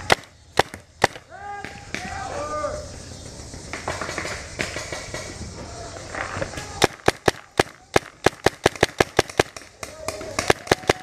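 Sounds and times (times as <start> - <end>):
paintball marker firing rapidly: 0.0 - 1.2, 6.8 - 11.0.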